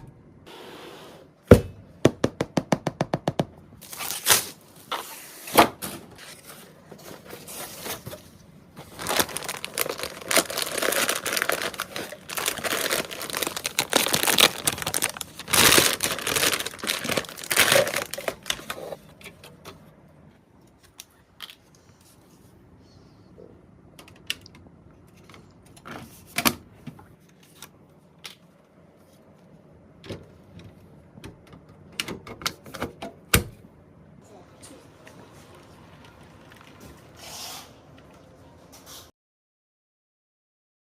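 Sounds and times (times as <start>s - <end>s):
plastic packaging crinkling: 8.8s - 19.0s.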